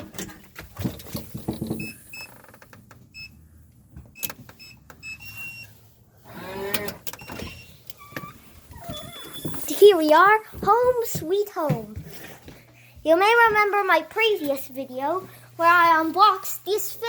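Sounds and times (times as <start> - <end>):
keypad lock beeping: 4.2 - 5.7.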